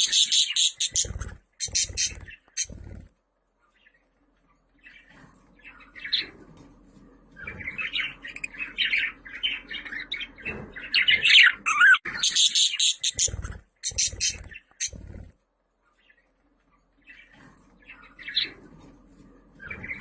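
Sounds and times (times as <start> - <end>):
budgerigar chattering and warbling: 0.0 - 2.8, 11.0 - 15.0.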